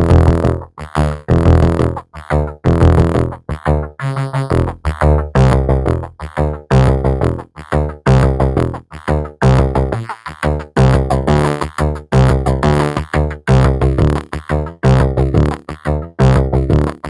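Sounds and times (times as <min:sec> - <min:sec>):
deep synth bass: 0:00.0 - 0:17.0
synthesizer notes: 0:09.0 - 0:14.0.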